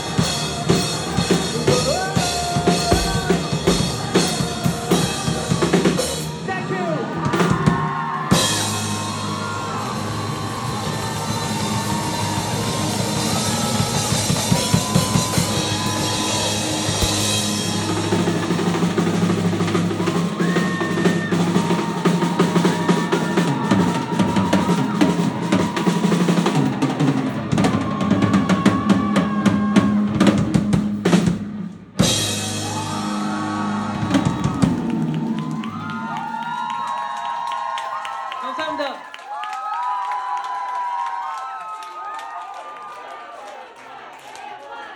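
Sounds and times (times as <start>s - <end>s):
live rock band playing: 0.0s - 6.5s, 8.3s - 35.0s
drum kit fills: 0.0s - 37.2s.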